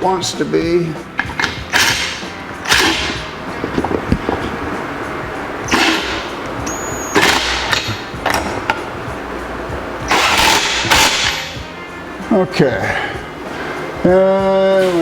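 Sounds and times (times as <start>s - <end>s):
metal tubes scraping: 1.0s - 11.6s.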